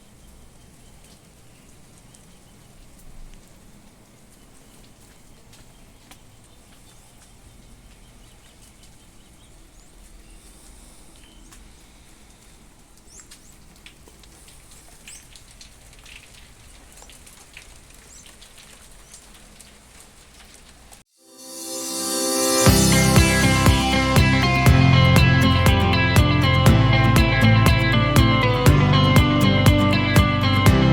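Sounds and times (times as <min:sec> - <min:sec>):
light rain patter: 0:00.0 - 0:21.1.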